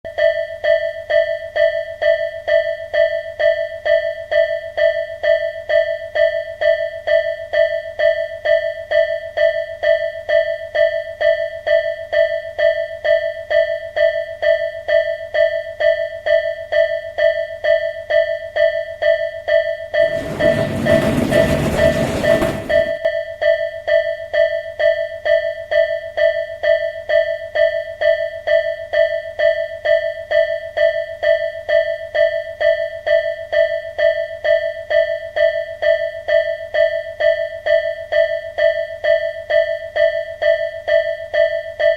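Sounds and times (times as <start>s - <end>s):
train rushing past: 20.0s - 23.0s.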